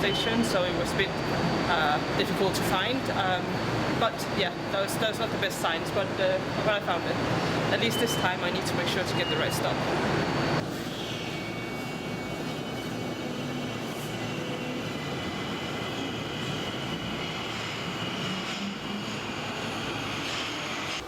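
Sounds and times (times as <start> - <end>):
faint high whine: 0.0 - 21.0
train rumble: 11.6 - 21.0.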